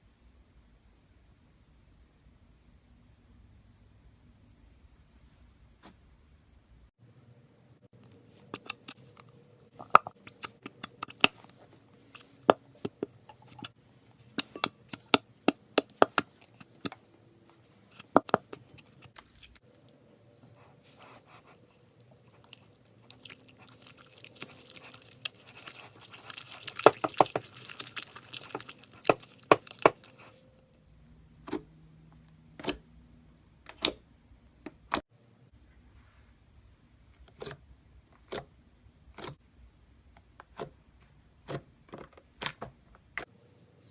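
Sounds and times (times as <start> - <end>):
slime squishing and popping: 22.3 - 30.3.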